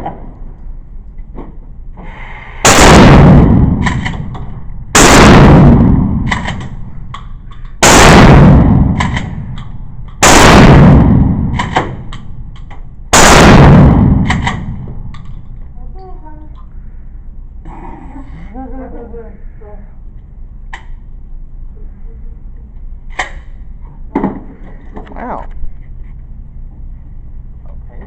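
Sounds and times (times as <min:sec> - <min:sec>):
loud gunshots: 0:02.6 - 0:06.8, 0:07.8 - 0:09.6, 0:10.2 - 0:12.1, 0:13.1 - 0:14.9.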